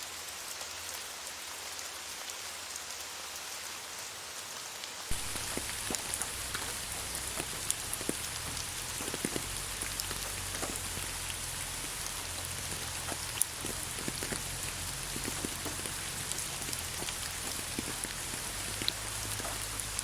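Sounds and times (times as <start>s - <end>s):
rain drops ticking: 5.1s - 20.0s.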